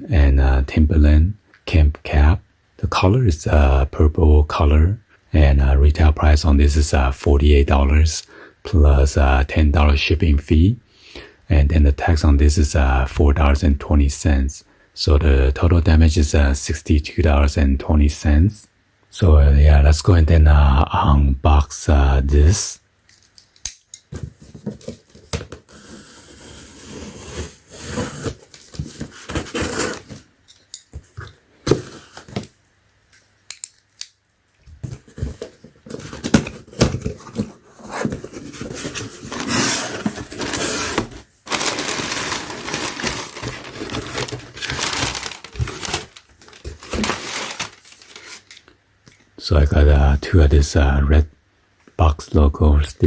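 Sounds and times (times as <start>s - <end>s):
packaging tearing and crinkling: 38.7s - 48.7s.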